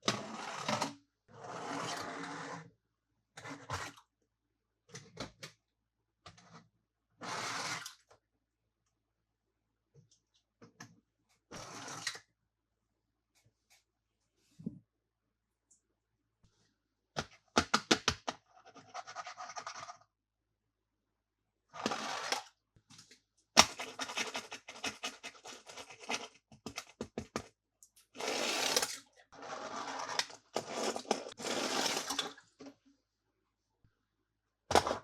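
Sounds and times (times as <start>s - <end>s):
toy packaging scraping and crinkling: 23.6s - 26.8s, 28.2s - 32.4s.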